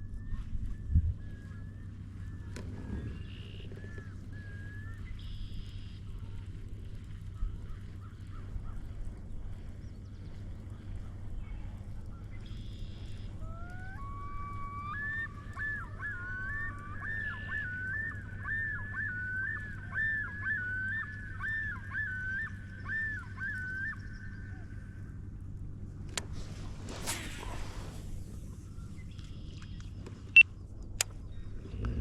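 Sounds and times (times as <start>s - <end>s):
low steady rumble: 0.0s - 32.0s
loon calling: 12.4s - 25.0s.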